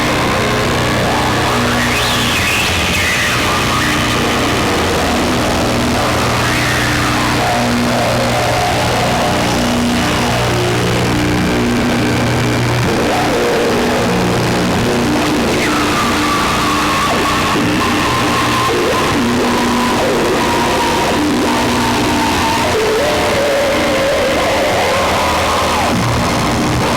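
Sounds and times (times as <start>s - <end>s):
low pulsing synth notes: 0.0s - 2.0s.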